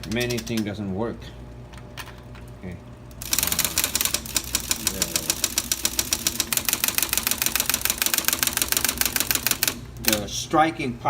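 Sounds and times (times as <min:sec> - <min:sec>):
electric typewriter clattering: 0:00.0 - 0:00.9, 0:03.2 - 0:10.3.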